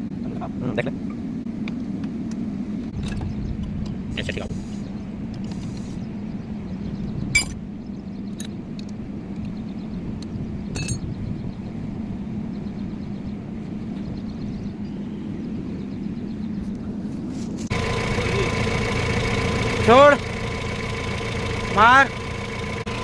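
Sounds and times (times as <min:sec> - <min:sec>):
metallic clinks of tools: 0:10.8 - 0:11.1
steady low hum: 0:17.7 - 0:23.0.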